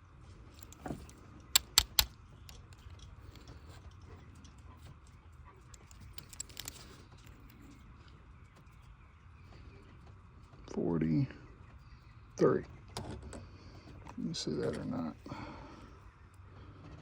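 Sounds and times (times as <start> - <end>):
sharp clicks: 0.6 - 3.4
metal hand tools rattling: 0.6 - 3.5, 5.8 - 7.0.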